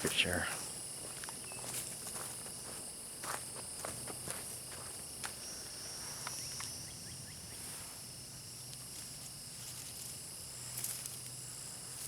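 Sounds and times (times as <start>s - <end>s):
footsteps crunching on trail: 0.0s - 5.5s
high-pitched insect chorus: 0.0s - 12.0s.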